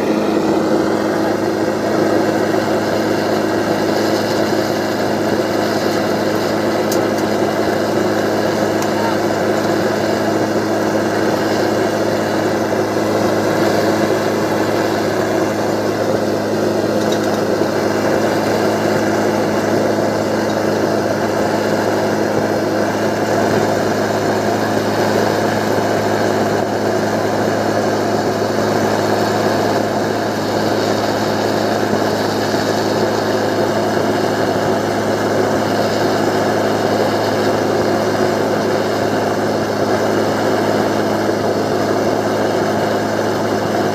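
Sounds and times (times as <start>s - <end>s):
machine engine humming: 0.0s - 43.9s.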